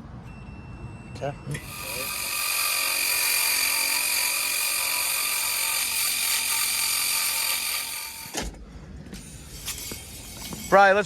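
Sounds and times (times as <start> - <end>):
electric motor whining: 1.6 - 8.4.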